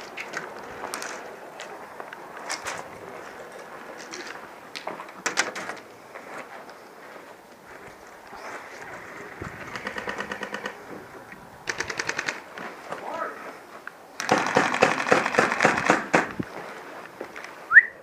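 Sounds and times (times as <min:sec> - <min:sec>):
airsoft gun bursts: 0:09.6 - 0:10.9, 0:11.6 - 0:12.6, 0:14.2 - 0:16.4.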